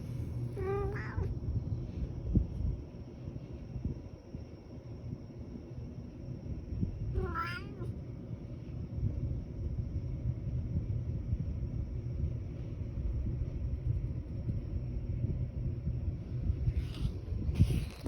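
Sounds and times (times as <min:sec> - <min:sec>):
cat meowing: 0:00.6 - 0:01.3, 0:07.2 - 0:07.9.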